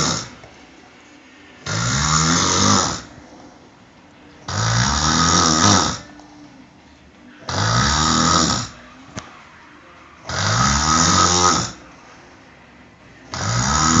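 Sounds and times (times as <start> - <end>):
man snoring loudly: 0.0 - 0.4, 1.6 - 3.2, 4.5 - 6.1, 7.5 - 8.8, 10.3 - 11.8, 13.3 - 14.0.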